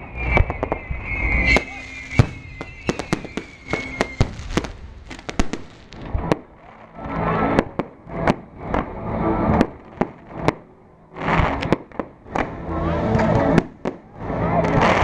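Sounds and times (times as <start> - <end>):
fireworks whistling: 0.0 - 7.8
fireworks banging: 0.0 - 8.9, 9.5 - 15.0.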